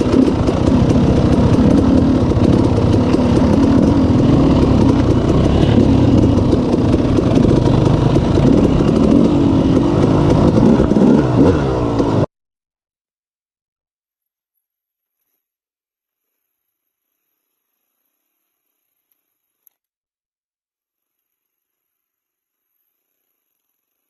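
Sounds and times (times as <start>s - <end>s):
atv engine running: 0.0s - 12.3s.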